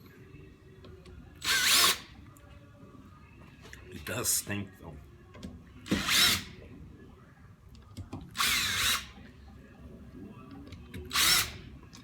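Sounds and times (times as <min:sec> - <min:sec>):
power drill spinning: 0:08.4 - 0:09.2, 0:11.1 - 0:11.6.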